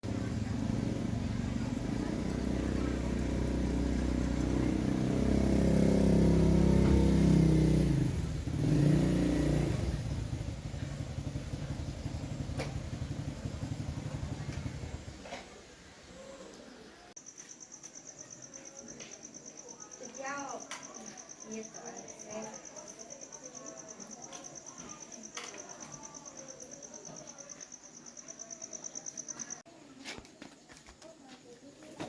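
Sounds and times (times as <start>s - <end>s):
small motorbike engine revving: 0.1s - 15.6s
crickets chirping: 10.1s - 15.0s, 16.2s - 29.7s.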